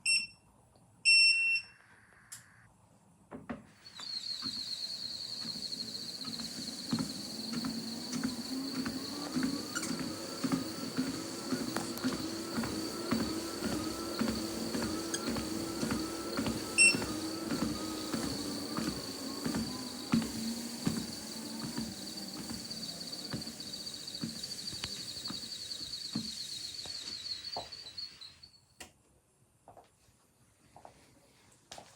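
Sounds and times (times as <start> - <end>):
treadmill motor whine: 3.8 - 28.7
treadmill squeak: 3.8 - 28.7.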